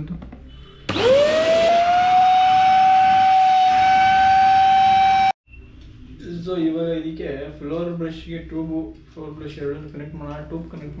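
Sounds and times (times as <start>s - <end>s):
handheld vacuum motor whine: 0.9s - 5.4s.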